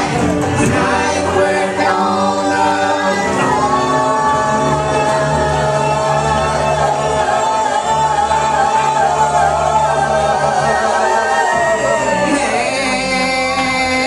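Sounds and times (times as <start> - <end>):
live band music: 0.0 - 8.4
voices singing long notes: 0.0 - 14.0.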